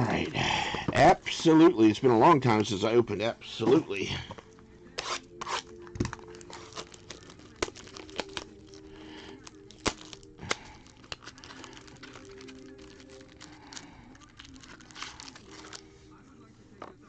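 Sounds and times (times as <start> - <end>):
wrapper tearing and crinkling: 5.0 - 15.8.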